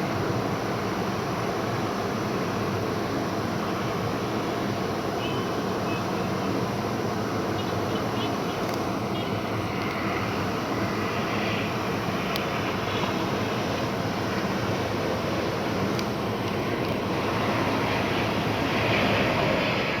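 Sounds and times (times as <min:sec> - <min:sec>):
jet engine rush: 0:06.6 - 0:20.0.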